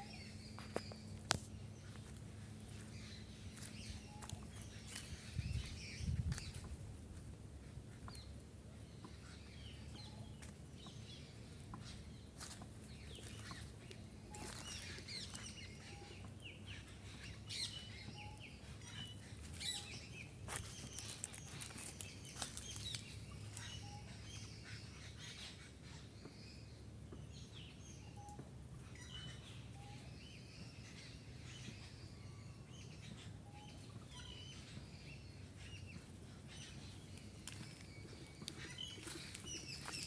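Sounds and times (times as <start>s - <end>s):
dry leaves crackling underfoot: 0.0s - 7.3s, 10.1s - 16.3s, 18.6s - 24.2s, 36.2s - 40.0s
small birds chirping: 0.0s - 40.0s.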